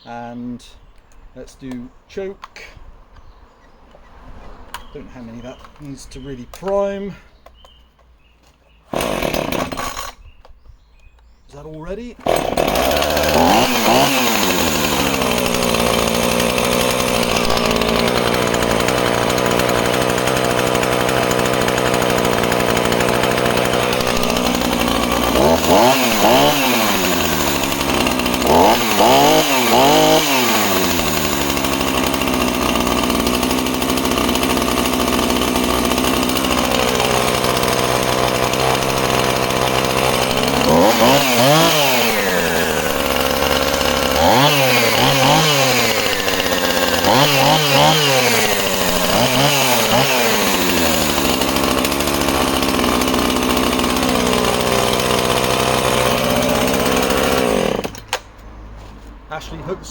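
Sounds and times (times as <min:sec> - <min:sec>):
chainsaw engine revving: 0:08.9 - 0:10.3, 0:12.1 - 0:58.2.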